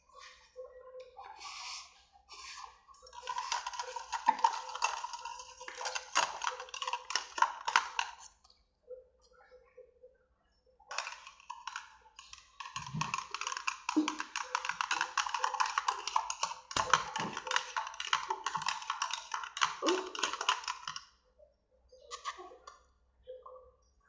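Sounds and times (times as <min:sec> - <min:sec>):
noodles chewed and slurped: 0:01.3 - 0:08.4, 0:10.9 - 0:21.1.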